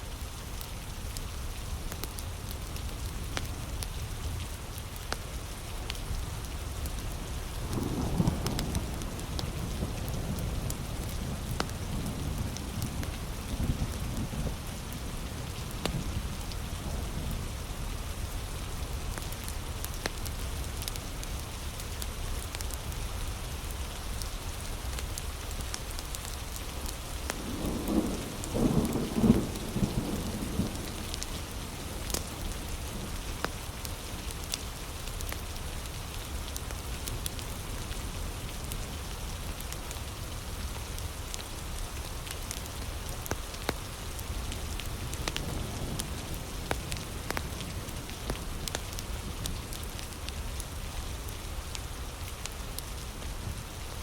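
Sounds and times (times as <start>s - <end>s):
heavy rain: 0.0s - 54.0s
wood fire crackles: 0.1s - 54.0s
thunder rumble: 7.2s - 17.4s, 26.9s - 33.2s.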